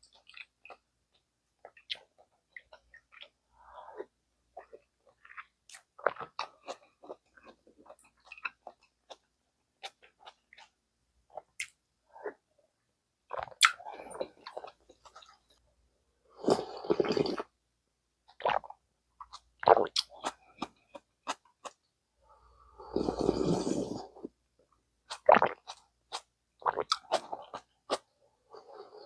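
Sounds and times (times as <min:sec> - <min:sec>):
wet mouth clicks and smacks: 0:13.3 - 0:13.8.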